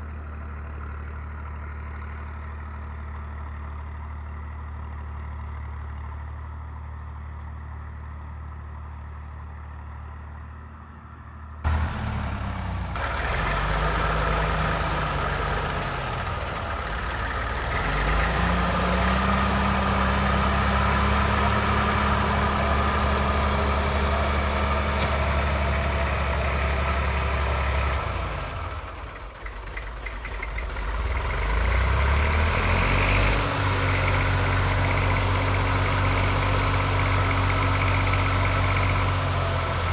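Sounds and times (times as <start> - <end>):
tractor diesel engine revving: 11.7 - 39.9.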